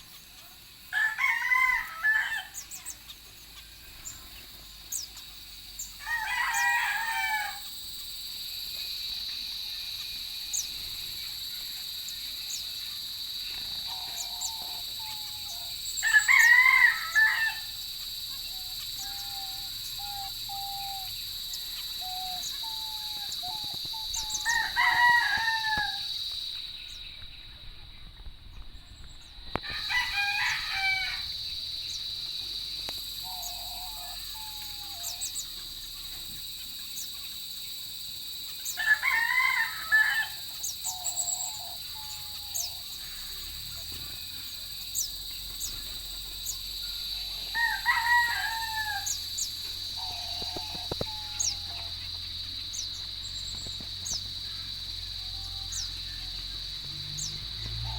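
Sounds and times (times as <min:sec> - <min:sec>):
rooster crowing: 0:00.9 - 0:02.6, 0:06.0 - 0:07.8, 0:13.9 - 0:17.9, 0:21.8 - 0:26.3, 0:29.5 - 0:31.6, 0:33.2 - 0:35.4, 0:38.7 - 0:42.6, 0:47.0 - 0:52.0.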